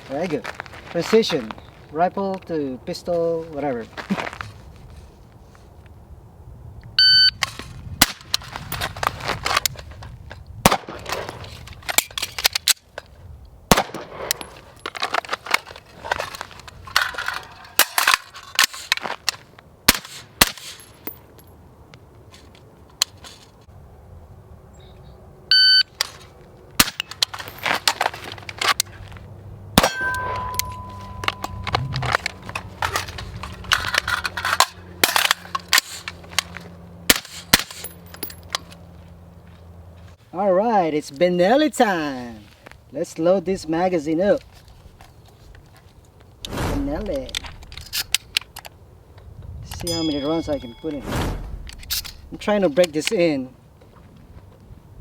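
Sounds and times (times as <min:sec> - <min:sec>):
short electronic beeps: 0:07.0 - 0:07.4, 0:25.5 - 0:25.9, 0:30.0 - 0:31.9
gunshots: 0:10.6 - 0:11.3, 0:13.7 - 0:14.4
steel targets ringing: 0:29.8 - 0:31.8, 0:49.8 - 0:51.0.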